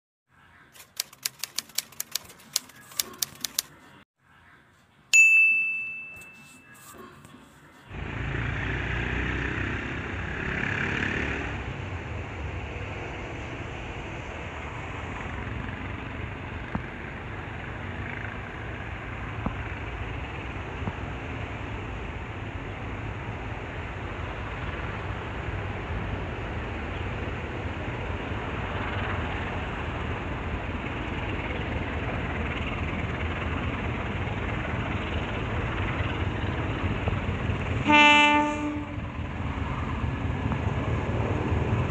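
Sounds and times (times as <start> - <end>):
train rumbling along track: 7.0 - 41.9.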